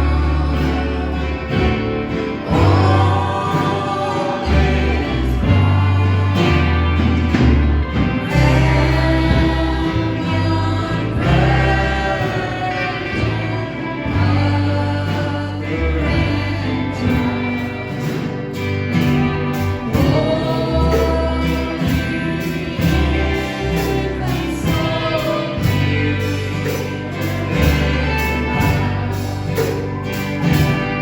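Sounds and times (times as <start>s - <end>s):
gospel choir singing: 0.0s - 31.0s
instrumental backing with beat: 17.1s - 31.0s.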